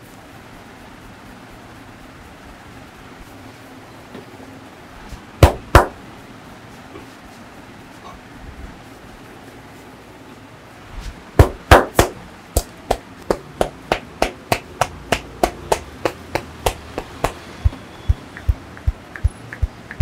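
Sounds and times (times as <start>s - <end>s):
hands slapping body rhythmically: 5.4s - 6.0s, 11.4s - 20.0s.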